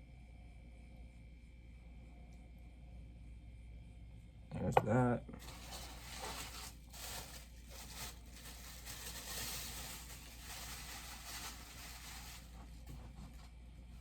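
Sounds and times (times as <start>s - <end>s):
packaging rustling: 5.4s - 13.1s.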